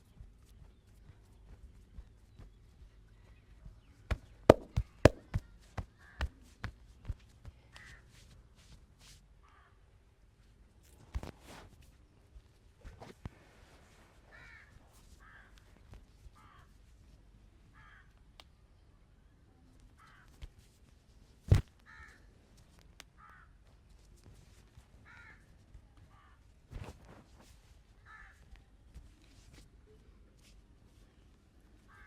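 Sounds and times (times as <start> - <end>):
sharp smack: 4.1 - 5.4
soft knock: 4.1 - 5.5
crow cawing: 17.8 - 18.1, 21.9 - 22.3, 23.2 - 23.5, 25.1 - 25.4, 28.1 - 28.4.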